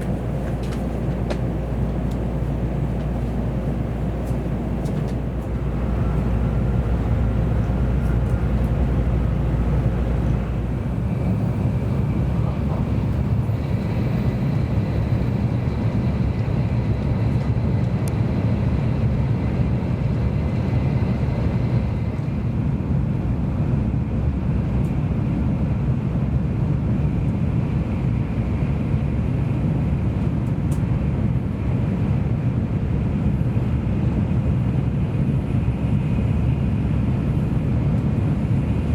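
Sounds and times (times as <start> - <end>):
train wheels rumbling: 0.0 - 25.7.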